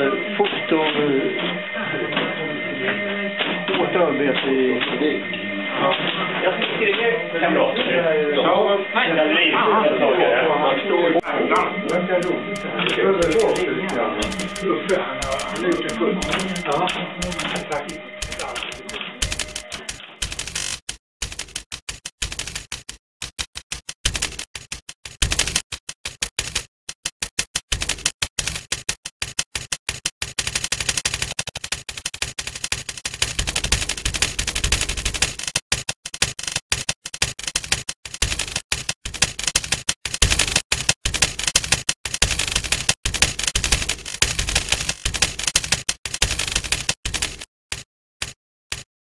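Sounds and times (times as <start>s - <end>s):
typewriter typing quickly: 11.2s - 48.9s.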